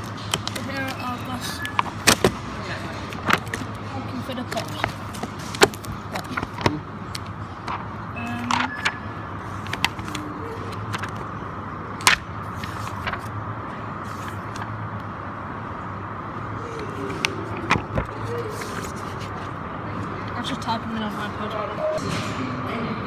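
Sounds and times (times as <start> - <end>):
steady droning hum: 0.0 - 23.0.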